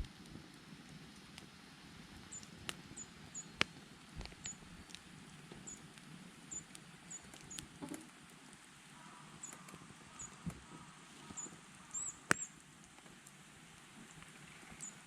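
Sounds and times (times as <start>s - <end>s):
campfire crackling with pops: 0.0s - 15.0s
small bird high-pitched calls: 5.6s - 5.9s, 9.0s - 12.6s.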